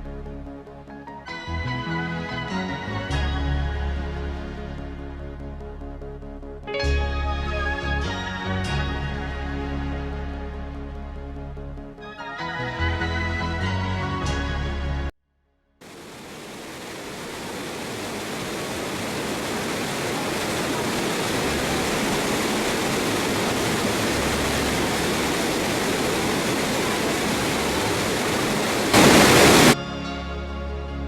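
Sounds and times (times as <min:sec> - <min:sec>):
waterfall rushing: 0:15.8 - 0:29.8.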